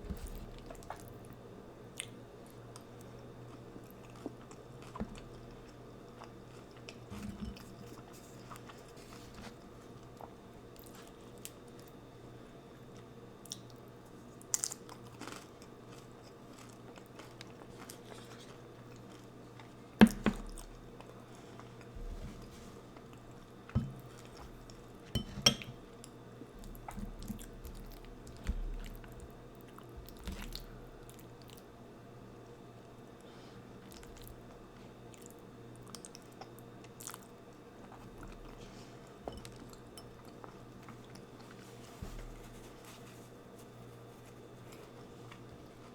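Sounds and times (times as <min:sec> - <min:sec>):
wet chewing and crunching: 0:14.4 - 0:21.9.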